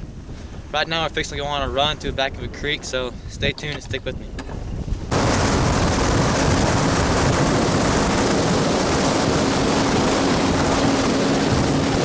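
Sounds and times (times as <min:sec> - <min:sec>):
wind and water rushing: 0:00.0 - 0:12.0
outboard motor running: 0:05.1 - 0:12.0.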